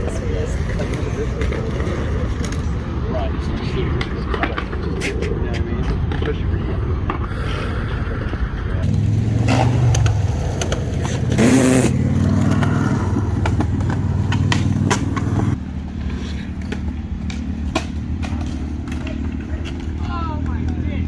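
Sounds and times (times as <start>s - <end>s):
vehicle engine running: 7.6s - 21.0s.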